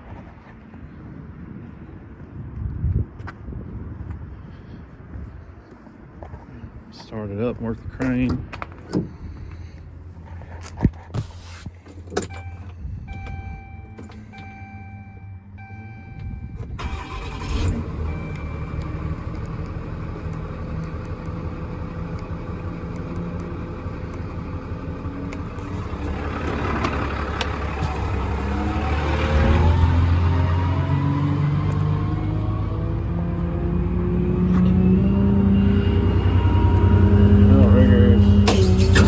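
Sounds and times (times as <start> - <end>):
diesel engine starting and running: 3.2 - 39.0
dashboard warning chime beeping: 12.2 - 19.3.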